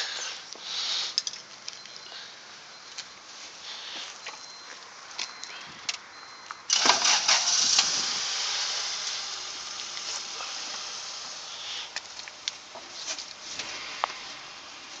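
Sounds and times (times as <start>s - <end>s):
car engine starting and running: 6.6s - 15.0s.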